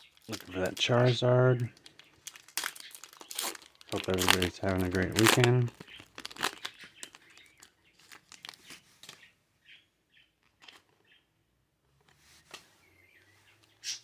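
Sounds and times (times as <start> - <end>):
foil wrapper crinkling: 0.0 - 9.3
trading cards handled: 0.0 - 9.3.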